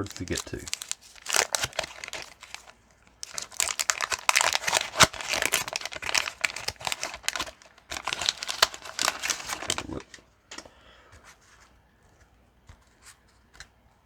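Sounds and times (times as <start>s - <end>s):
wax paper wrapper crinkling: 0.0s - 10.3s.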